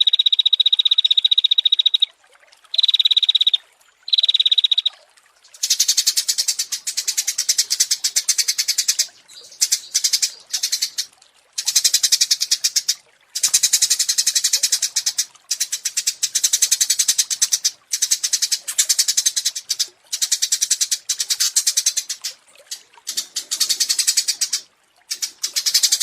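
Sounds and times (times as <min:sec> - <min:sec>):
songbird chattering trills: 0:02.8 - 0:04.9, 0:05.5 - 0:26.0.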